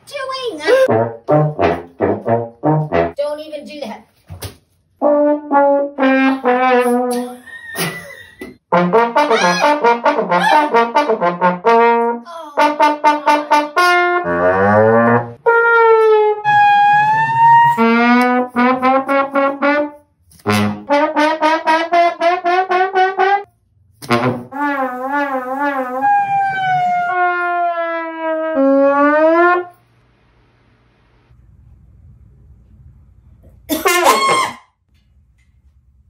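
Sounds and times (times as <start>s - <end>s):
comic trombone notes: 0.8s - 3.2s, 5.0s - 7.4s, 8.7s - 29.8s.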